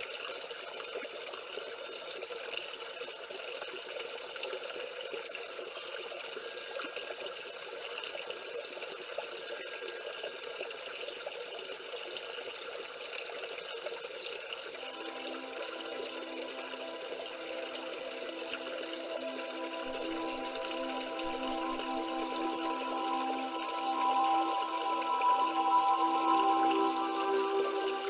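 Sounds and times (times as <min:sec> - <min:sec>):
waterfall splashing over stones: 0:10.3 - 0:28.0
soft music tones: 0:14.7 - 0:28.0.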